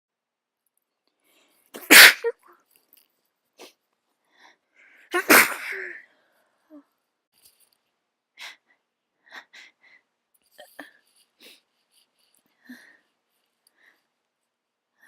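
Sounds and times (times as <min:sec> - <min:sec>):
person sneezing: 0:01.8 - 0:02.4, 0:05.1 - 0:06.0.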